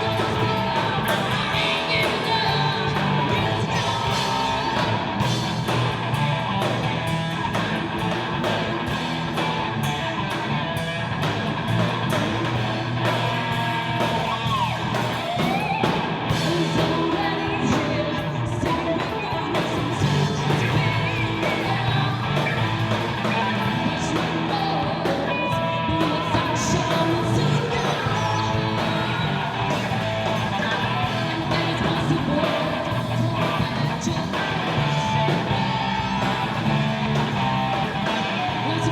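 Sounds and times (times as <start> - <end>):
person singing: 0.0 - 5.0, 16.3 - 36.4
live band playing: 0.0 - 38.9.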